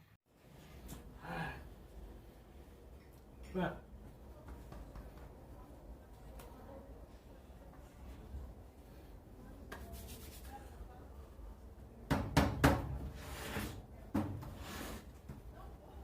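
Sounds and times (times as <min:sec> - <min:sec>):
rubbing or scraping: 0:09.8 - 0:10.6, 0:13.1 - 0:15.2.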